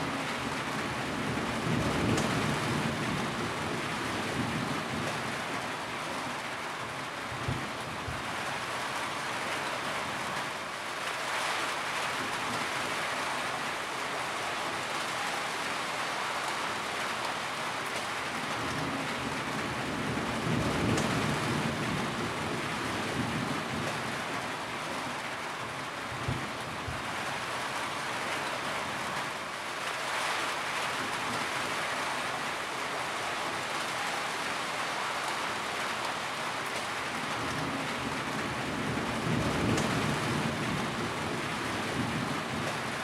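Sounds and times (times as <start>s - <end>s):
steady rain: 0.0s - 43.0s
distant thunder rumble: 19.8s - 23.9s, 37.4s - 42.8s.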